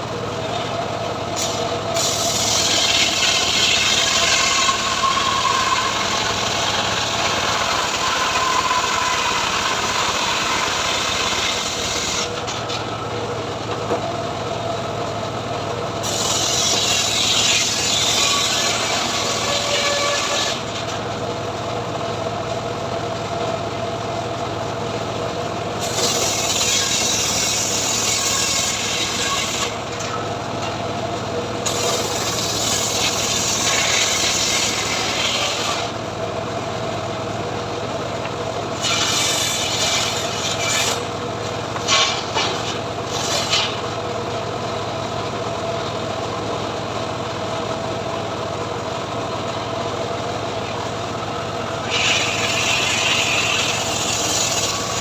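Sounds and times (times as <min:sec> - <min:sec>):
saw blade cutting wood: 0:01.3 - 0:12.9, 0:16.0 - 0:21.0, 0:25.8 - 0:30.2, 0:31.6 - 0:36.0, 0:38.7 - 0:43.9, 0:51.8 - 0:55.0.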